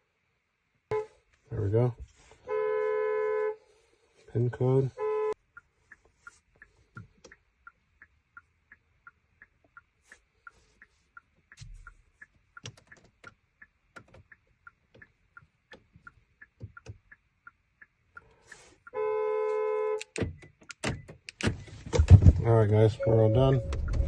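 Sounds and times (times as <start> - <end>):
faint electronic ticking: 5.3 - 19.1, 23.0 - 24.0.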